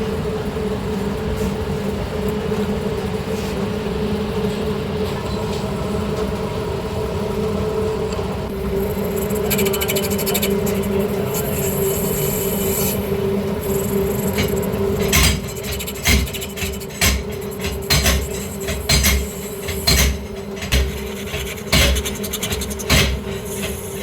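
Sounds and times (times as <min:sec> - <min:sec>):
metal lathe humming: 0:07.4 - 0:24.0
hissy cutting noise: 0:08.5 - 0:24.0.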